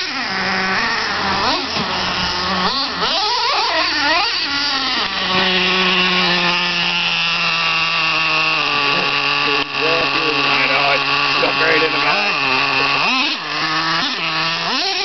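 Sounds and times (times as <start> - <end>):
small nitro engine revving: 0.0 - 15.0.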